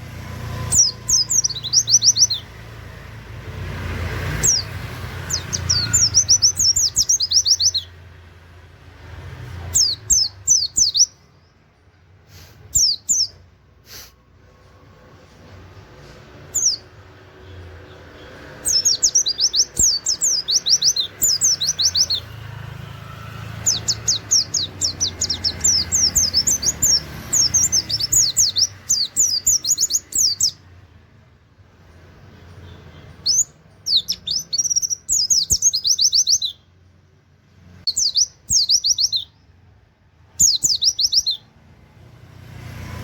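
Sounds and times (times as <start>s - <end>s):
bird singing rapid high notes: 0.4s - 3.0s, 4.1s - 8.2s, 9.0s - 11.6s, 12.6s - 13.4s, 16.4s - 30.7s, 32.4s - 36.8s, 37.8s - 39.6s, 40.3s - 41.6s.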